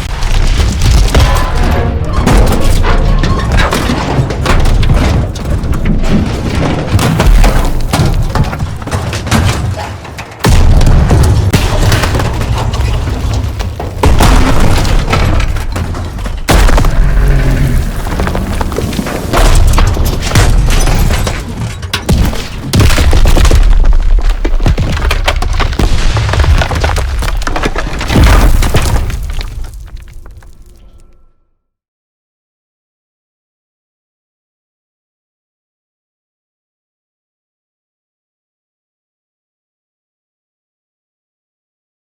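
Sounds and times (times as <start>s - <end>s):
heavy explosions: 0.0s - 30.4s
debris breaking: 0.0s - 31.2s.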